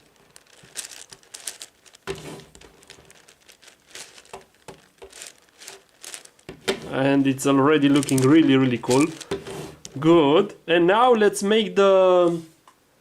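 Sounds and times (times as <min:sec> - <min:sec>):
puzzle cube clicking and scraping: 0:00.6 - 0:03.1, 0:07.8 - 0:10.0.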